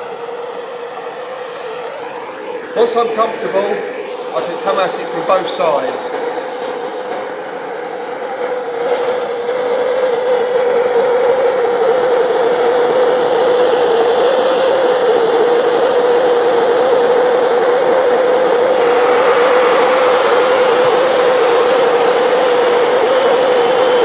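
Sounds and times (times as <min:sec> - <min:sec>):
blowtorch flame rushing: 0:18.7 - 0:24.0.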